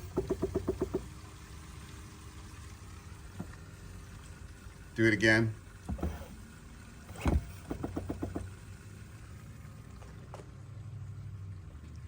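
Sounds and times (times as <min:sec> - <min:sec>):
thump: 0:05.9 - 0:06.3, 0:07.1 - 0:08.5.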